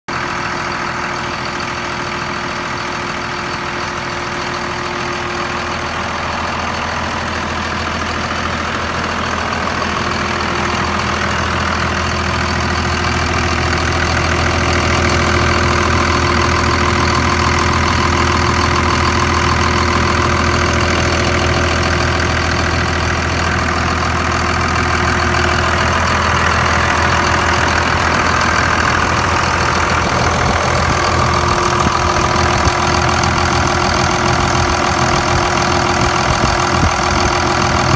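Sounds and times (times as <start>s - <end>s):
diesel engine idling: 0.1s - 37.9s
valvetrain ticking: 6.5s - 37.9s.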